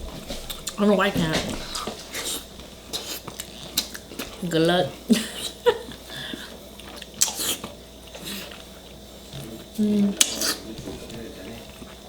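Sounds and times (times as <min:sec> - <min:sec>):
food being bitten and chewed: 0:00.0 - 0:00.8, 0:01.5 - 0:04.4, 0:05.9 - 0:09.4, 0:10.1 - 0:12.0.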